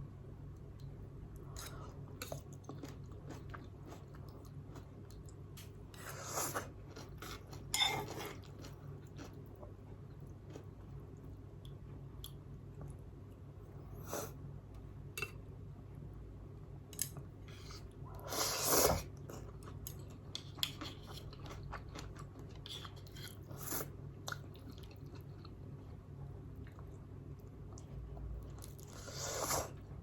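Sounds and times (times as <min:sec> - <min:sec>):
steady low hum: 0:00.0 - 0:30.0
chewing noodles: 0:01.4 - 0:05.4.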